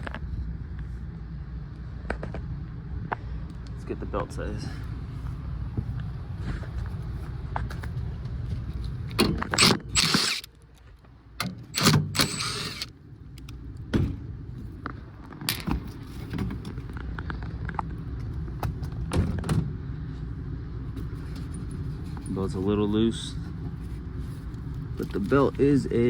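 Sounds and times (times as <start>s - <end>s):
steady low rumble: 0.0s - 26.0s
tools clattering and knocking on metal: 15.4s - 16.8s.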